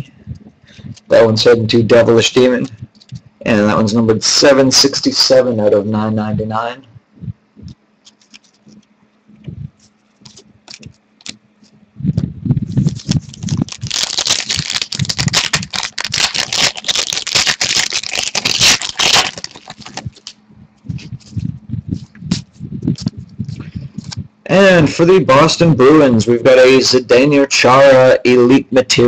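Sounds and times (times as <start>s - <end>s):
card pack wrapper crinkling: 8.0s - 8.8s, 10.2s - 11.4s, 12.7s - 20.4s
cards clicking: 10.2s - 11.4s.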